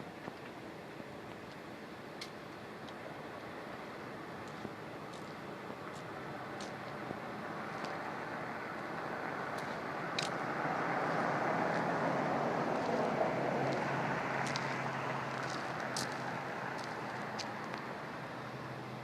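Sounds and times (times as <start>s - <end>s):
faint ticks: 2.2s - 3.0s
vehicle passing on road: 2.6s - 19.0s.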